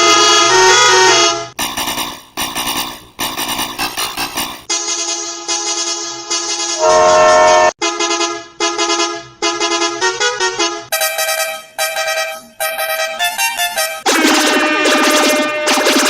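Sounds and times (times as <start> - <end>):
multi-tone bus horn blasts: 0.0 - 1.6, 6.8 - 15.7.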